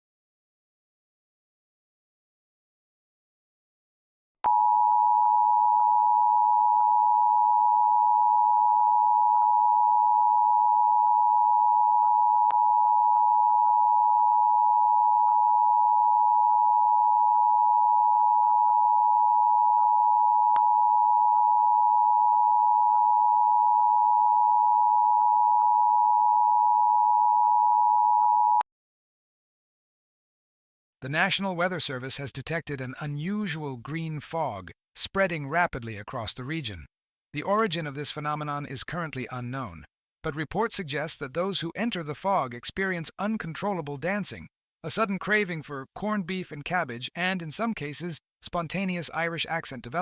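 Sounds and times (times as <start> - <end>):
two-tone alarm: 4.5 - 28.6.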